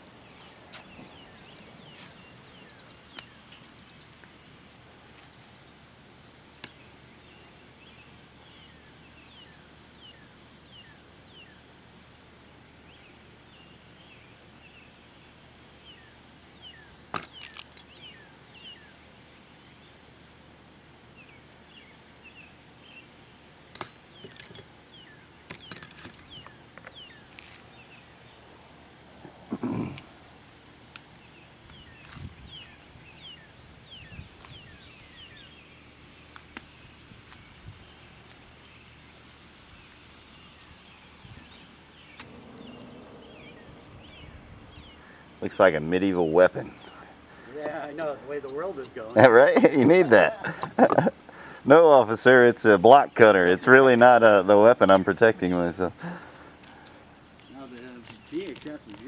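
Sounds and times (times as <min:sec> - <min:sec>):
sharp clinks and knocks: 0:23.7 - 0:24.8, 0:25.5 - 0:26.5.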